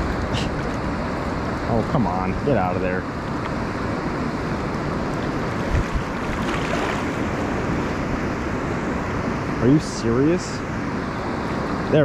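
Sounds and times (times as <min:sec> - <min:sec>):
river water rushing: 0:03.1 - 0:09.6, 0:10.6 - 0:11.9.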